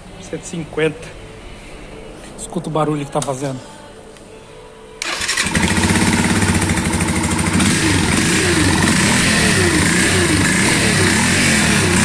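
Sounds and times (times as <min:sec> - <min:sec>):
motorcycle engine running: 0:05.0 - 0:12.0.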